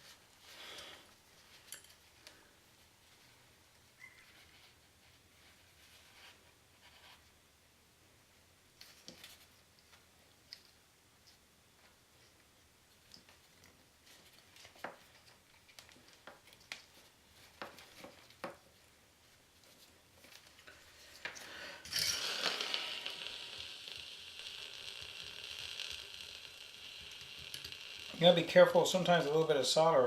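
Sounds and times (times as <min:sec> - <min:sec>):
small parts clicking and tapping: 0:20.5 - 0:28.5
solder sizzling: 0:21.2 - 0:30.0.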